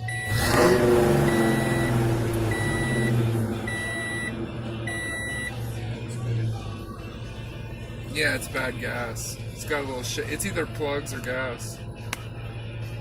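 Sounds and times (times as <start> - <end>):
car warning chime beeping: 0.0 - 5.6.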